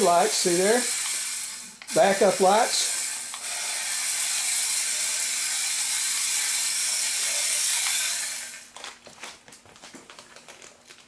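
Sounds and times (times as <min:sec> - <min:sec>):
toy truck motor whirring: 0:00.0 - 0:08.7.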